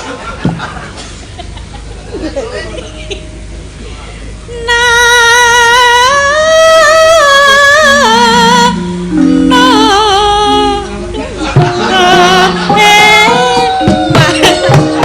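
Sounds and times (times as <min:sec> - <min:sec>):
gamelan accompaniment: 0:02.5 - 0:03.9, 0:07.8 - 0:15.0
woman singing long held notes: 0:04.5 - 0:15.0.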